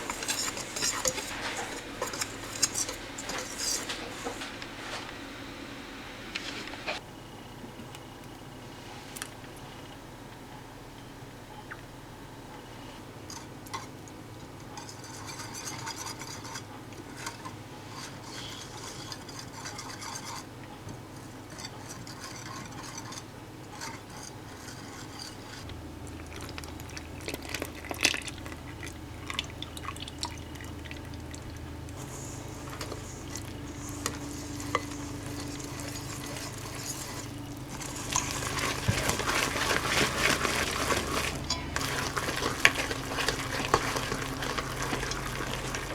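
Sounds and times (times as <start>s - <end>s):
utensil clinking against bowl: 0.0s - 5.2s, 14.6s - 45.9s
batter stirred in mixing bowl: 0.0s - 7.0s, 12.8s - 45.9s
steady hiss: 0.0s - 7.0s.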